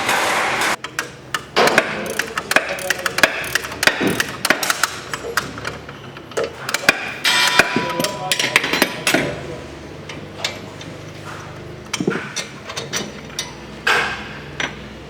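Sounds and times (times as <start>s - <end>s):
noisy scrape: 0.0s - 0.8s
hand tools clanking on metal: 0.1s - 14.9s.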